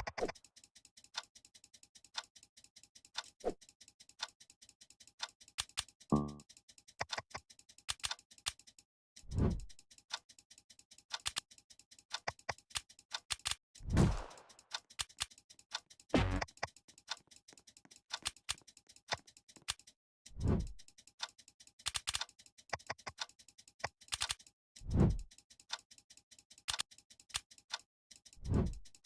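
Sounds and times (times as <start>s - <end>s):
ticking clicks: 0.0s - 29.0s.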